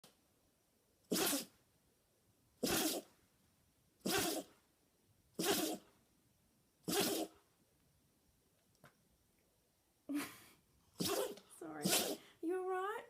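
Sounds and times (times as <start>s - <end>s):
puppy sneezing: 1.1s - 1.6s, 2.6s - 3.1s, 4.0s - 4.6s, 5.4s - 5.9s, 6.8s - 7.4s, 11.0s - 12.3s.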